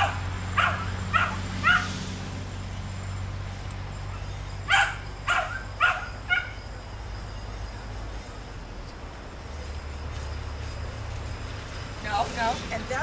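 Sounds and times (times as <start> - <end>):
dog barking: 0.0 - 1.9, 4.7 - 6.6.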